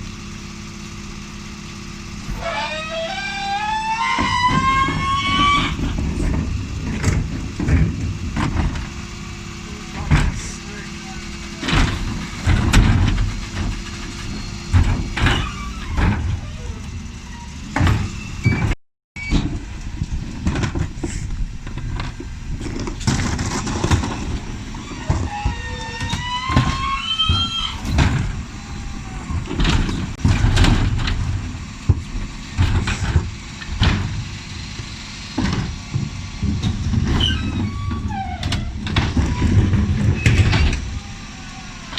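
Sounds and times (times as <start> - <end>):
truck engine running: 0.0 - 41.9
bins and metal banging: 2.2 - 41.9
rising squeal: 2.3 - 5.9, 24.8 - 28.0.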